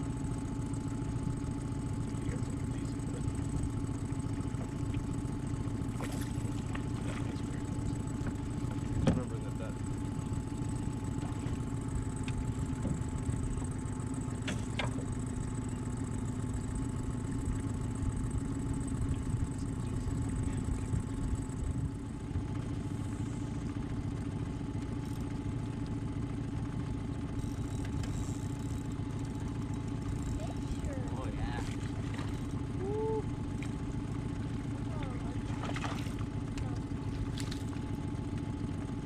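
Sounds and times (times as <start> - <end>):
vehicle engine running: 0.0 - 39.0.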